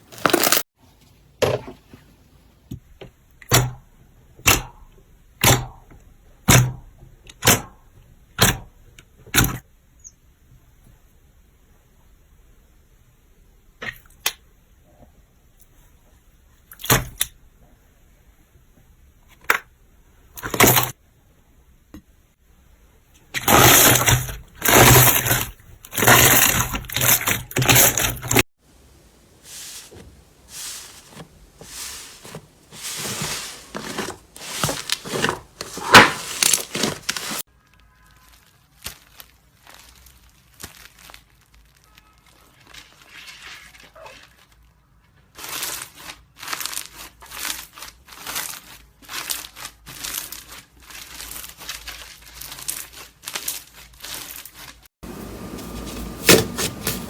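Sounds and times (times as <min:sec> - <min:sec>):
slime squishing: 0:45.3 - 0:54.8.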